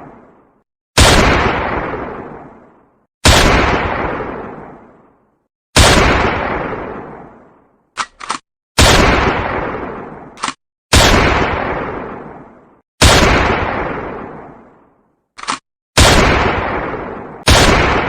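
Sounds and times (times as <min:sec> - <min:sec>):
echoing gunshots: 0:01.0 - 0:05.0, 0:05.8 - 0:14.7, 0:16.0 - 0:18.0
short gun clicks: 0:08.0 - 0:08.4, 0:15.4 - 0:15.6.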